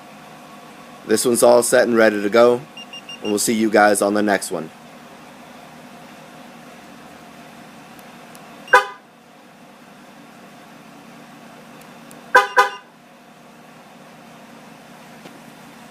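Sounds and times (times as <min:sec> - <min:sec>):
steady low hum: 0:00.0 - 0:15.9
truck horn chirps: 0:08.7 - 0:09.1, 0:12.3 - 0:12.9.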